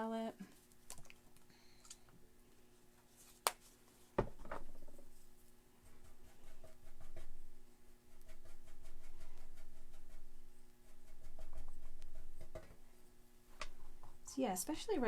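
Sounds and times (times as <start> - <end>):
faint steady hum: 0.0 - 15.0
brush scraping paint: 5.0 - 13.0.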